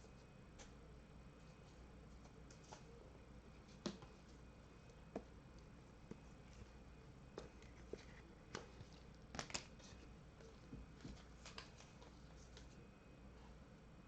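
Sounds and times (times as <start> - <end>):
cards clicking and rustling: 7.4 - 10.0, 11.0 - 12.7.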